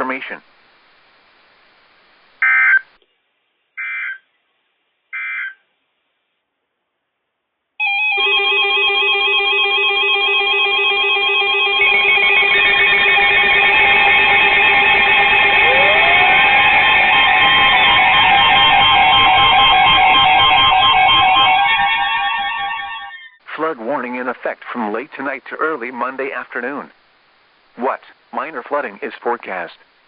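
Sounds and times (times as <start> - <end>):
faint radio hiss: 0.0 - 7.8, 23.4 - 30.0.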